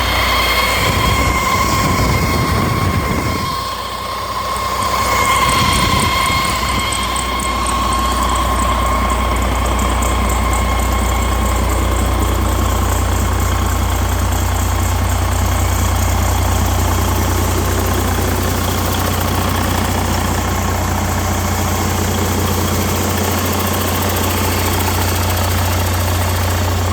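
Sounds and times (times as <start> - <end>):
diesel engine running: 0.0 - 26.9.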